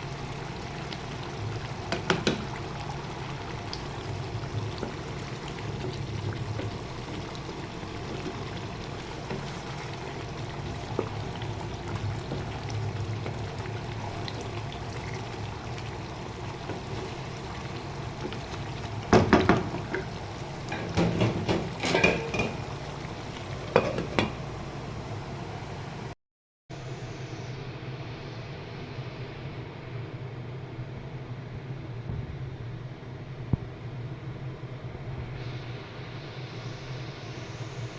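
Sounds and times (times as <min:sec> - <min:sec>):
spoon clattering against cooking pot: 0:20.7 - 0:22.7.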